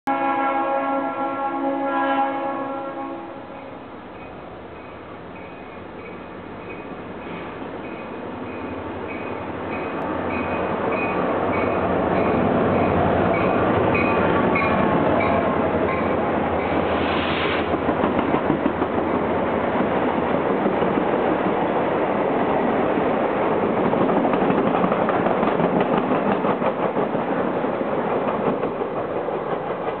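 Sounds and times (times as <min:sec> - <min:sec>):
diesel locomotive engine: 0:00.1 - 0:30.0
train wheels clicking over rail joints: 0:04.2 - 0:21.6, 0:22.3 - 0:30.0
air hiss: 0:16.7 - 0:17.8.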